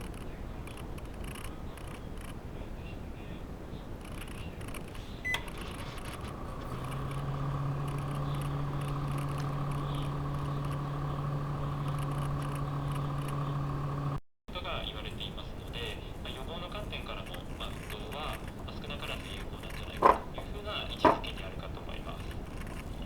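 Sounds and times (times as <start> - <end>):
microwave oven humming: 5.0 - 22.7
microwave button beep: 5.2 - 5.8.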